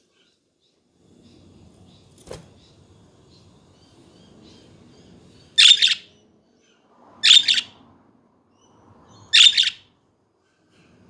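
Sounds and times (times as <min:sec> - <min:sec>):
budgies chirping: 0:02.6 - 0:06.2, 0:07.2 - 0:07.7, 0:09.1 - 0:09.8.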